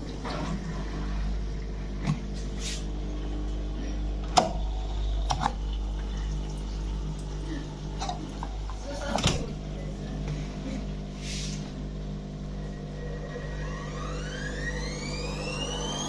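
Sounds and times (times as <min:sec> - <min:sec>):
washing machine humming: 0:00.0 - 0:16.0
washing machine clunk: 0:07.9 - 0:09.7
drum motor whine rising in pitch: 0:11.8 - 0:16.0.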